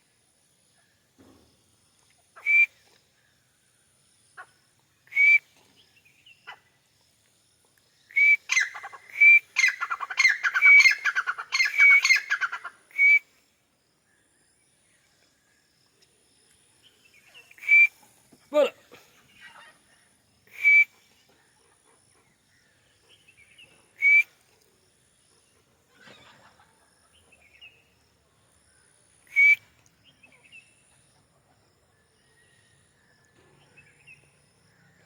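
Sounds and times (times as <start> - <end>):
bird whistled calls: 2.4 - 2.8, 5.1 - 5.5, 8.1 - 13.3, 17.5 - 18.0, 20.5 - 21.0, 24.0 - 24.3, 29.3 - 29.8.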